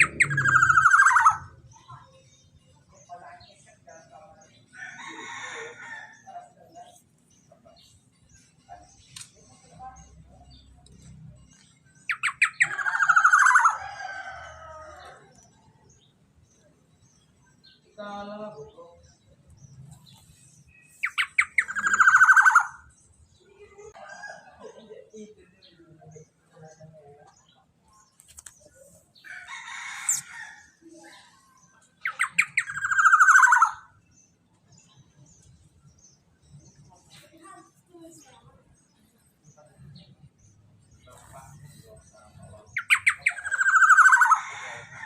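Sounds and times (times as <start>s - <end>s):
oriole calling: 0.0s - 1.6s, 21.0s - 22.9s.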